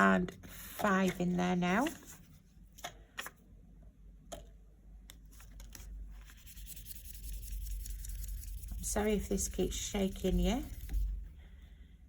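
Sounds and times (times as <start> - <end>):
pen scratching on paper: 6.3 - 11.2.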